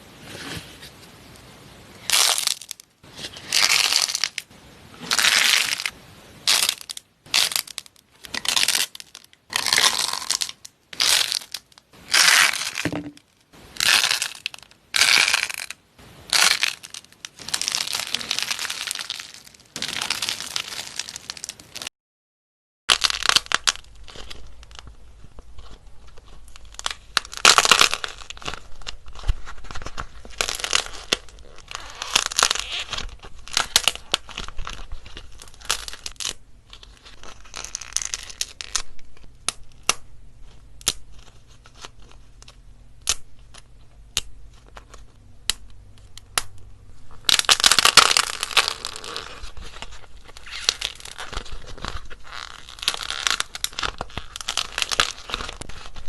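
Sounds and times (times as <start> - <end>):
dried clay crackling: 0.0 - 21.9, 22.9 - 56.0.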